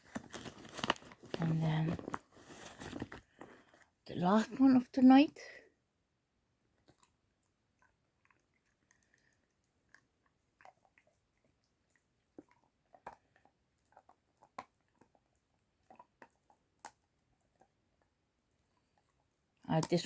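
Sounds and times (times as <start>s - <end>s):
dog chewing a treat: 6.8s - 19.9s.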